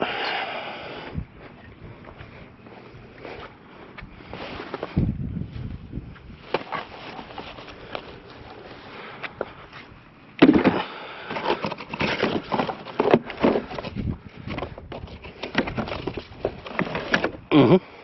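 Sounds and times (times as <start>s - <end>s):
objects knocking and rattling: 10.4s - 17.5s.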